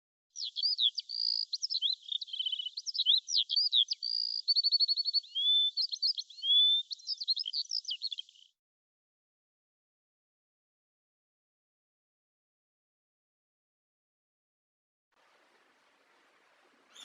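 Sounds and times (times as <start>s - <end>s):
songbird singing: 0.4s - 8.5s, 15.3s - 17.0s.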